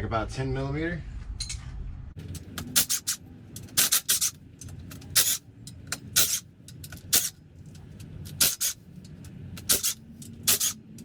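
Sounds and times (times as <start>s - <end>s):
socket ratchet clicking: 2.2s - 11.0s.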